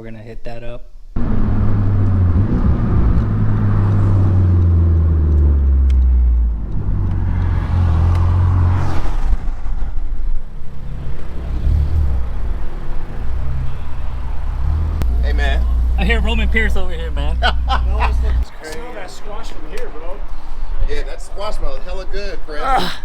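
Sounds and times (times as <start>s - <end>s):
car engine running: 10.7s - 18.4s.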